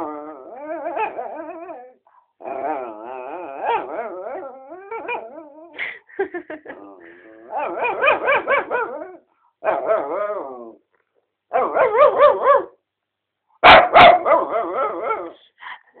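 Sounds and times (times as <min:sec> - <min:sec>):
dog barking: 0:07.6 - 0:08.9, 0:11.5 - 0:12.8, 0:13.6 - 0:14.6.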